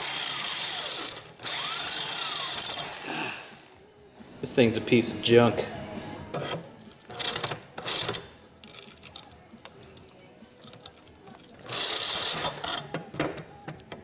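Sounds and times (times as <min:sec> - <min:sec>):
impact driver grinding steel blade: 0:00.0 - 0:03.7, 0:06.3 - 0:13.4.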